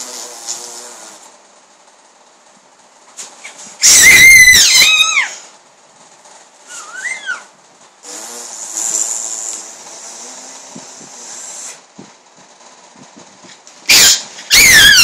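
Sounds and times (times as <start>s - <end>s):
pet hissing snore-like breath: 0.0s - 1.3s, 8.0s - 11.9s
pet squeaky cry: 3.4s - 5.4s, 6.7s - 7.5s, 13.9s - 15.0s.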